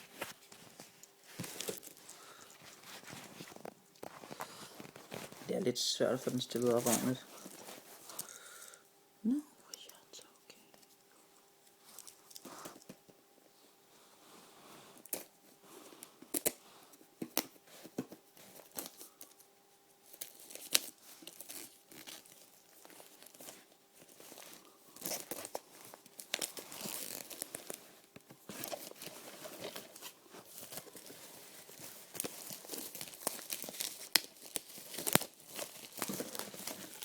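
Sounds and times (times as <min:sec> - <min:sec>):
packaging tearing and crinkling: 0:01.4 - 0:05.4, 0:20.1 - 0:27.8, 0:28.5 - 0:37.0.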